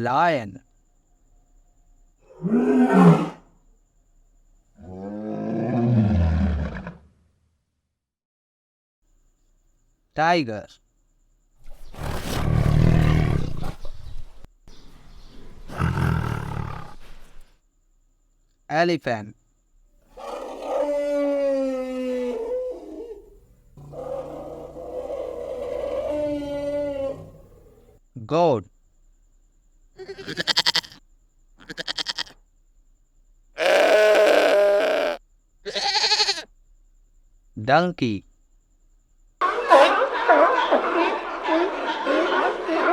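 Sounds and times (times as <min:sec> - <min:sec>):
tiger roaring: 0:02.3 - 0:03.5, 0:04.8 - 0:07.1, 0:11.9 - 0:14.0, 0:15.4 - 0:17.4, 0:20.1 - 0:28.0, 0:33.6 - 0:35.2
goat bleating: 0:30.0 - 0:31.0, 0:31.6 - 0:32.4, 0:33.6 - 0:36.5.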